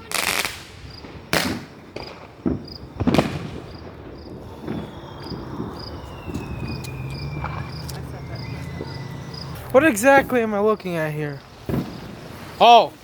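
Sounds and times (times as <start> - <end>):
crickets chirping: 0.0 - 13.0
roman candle bangs: 11.6 - 12.6.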